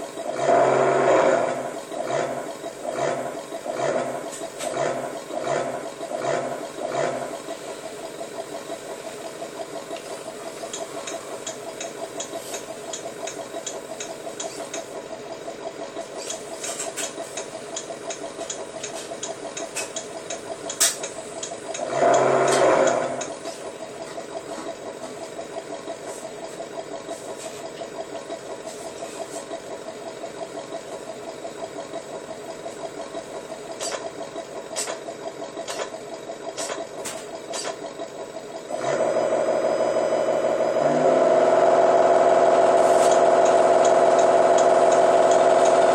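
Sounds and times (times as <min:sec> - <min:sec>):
engine idling: 0:00.0 - 0:45.9
engine revving: 0:00.2 - 0:07.5, 0:21.7 - 0:23.4, 0:38.7 - 0:45.9.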